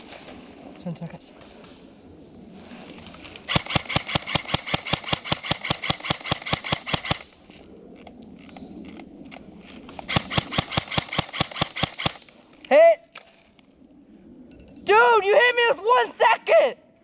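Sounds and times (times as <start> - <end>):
airsoft gun firing: 3.5 - 7.3, 10.1 - 12.2.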